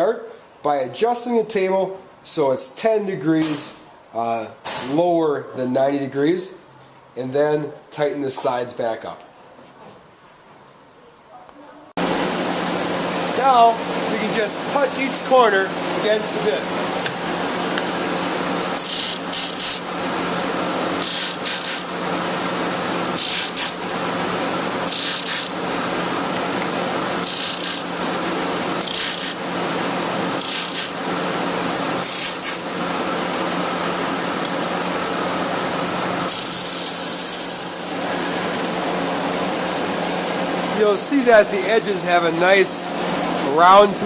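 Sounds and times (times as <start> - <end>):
disc sander humming: 12.0 - 36.3
abrasive hissing on wood: 21.0 - 21.9, 30.4 - 31.0.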